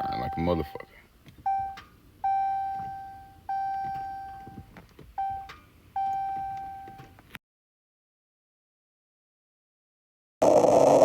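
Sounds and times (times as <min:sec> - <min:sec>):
car warning chime: 0:00.0 - 0:07.2.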